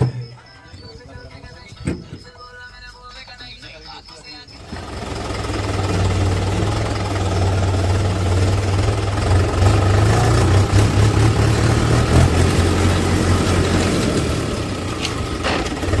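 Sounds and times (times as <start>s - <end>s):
heavy diesel engine droning: 3.8s - 16.0s.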